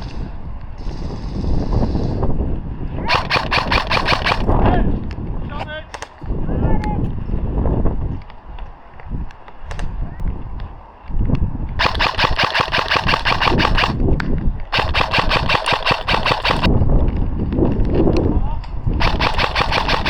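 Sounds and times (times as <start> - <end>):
airsoft gun firing full auto: 3.1 - 4.6, 11.8 - 14.0, 14.7 - 16.7, 19.0 - 20.0.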